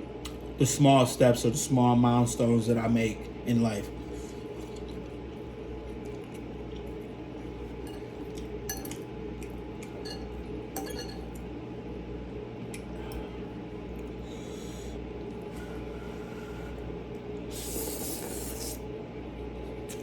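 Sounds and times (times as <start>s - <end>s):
low background hum: 0.0s - 20.0s
metal utensils clinking on dish: 8.7s - 9.0s, 10.0s - 11.4s.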